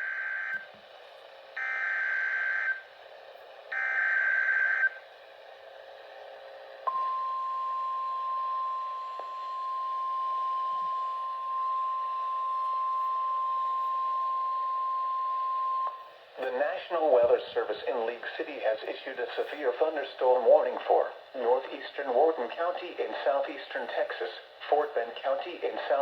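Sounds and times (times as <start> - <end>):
steady warning alarm tone: 0.0 - 0.6, 1.6 - 2.9, 3.7 - 5.0, 6.9 - 16.1
radio hiss: 16.4 - 26.0.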